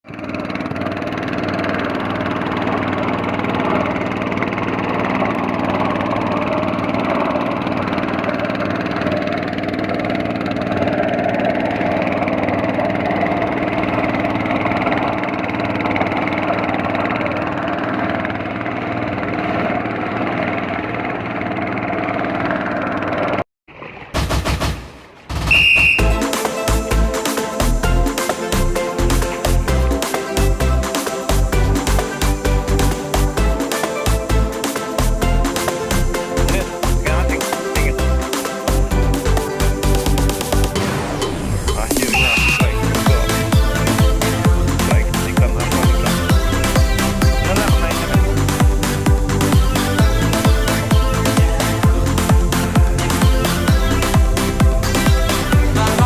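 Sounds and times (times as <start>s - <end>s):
boat engine droning: 0.0s - 24.0s, 25.3s - 56.0s
music: 25.5s - 56.0s.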